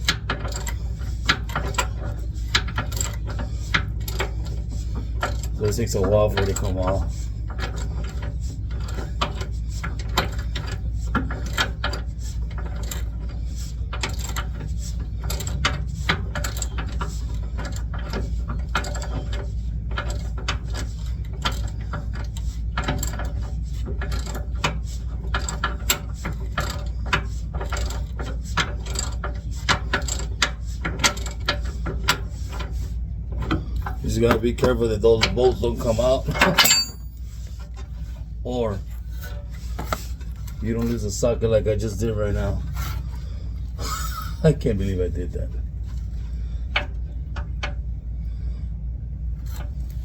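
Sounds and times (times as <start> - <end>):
low hum: 0.0 - 50.0.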